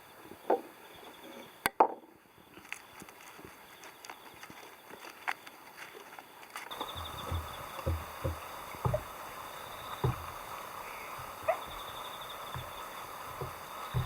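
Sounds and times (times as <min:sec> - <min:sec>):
dull thumps: 0:06.7 - 0:14.0.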